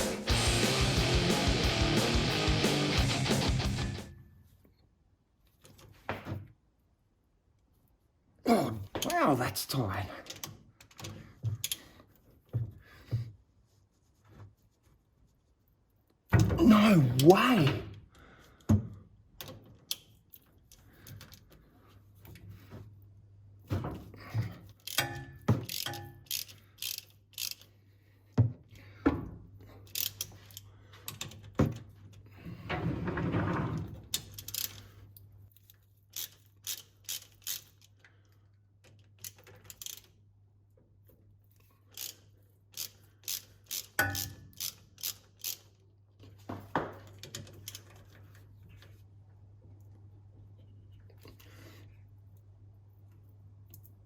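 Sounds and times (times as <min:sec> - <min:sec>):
ratchet clicking: 0:24.8 - 0:27.7, 0:29.8 - 0:31.3, 0:34.2 - 0:34.8, 0:36.1 - 0:37.9, 0:39.1 - 0:40.1, 0:41.9 - 0:45.8.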